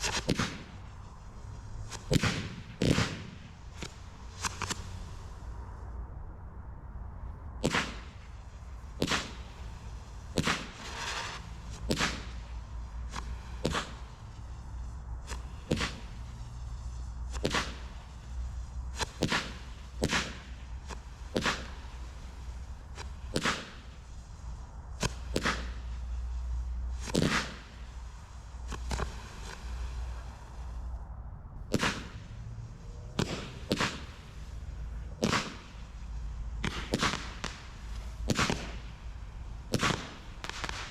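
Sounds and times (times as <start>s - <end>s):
firework cake popping: 0.0s - 5.5s, 7.6s - 30.8s, 31.6s - 40.9s.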